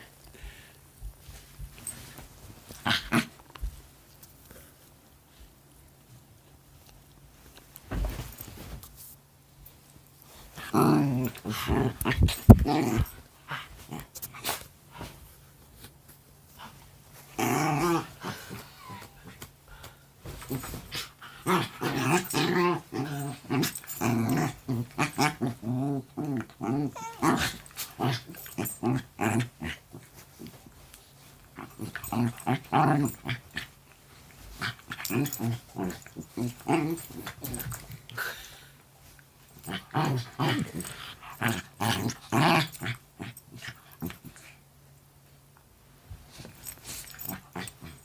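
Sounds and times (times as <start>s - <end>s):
dogs growling while play-fighting: 2.7s - 3.4s, 10.5s - 15.2s, 16.6s - 30.8s, 31.4s - 38.5s, 39.5s - 44.6s, 46.3s - 48.0s.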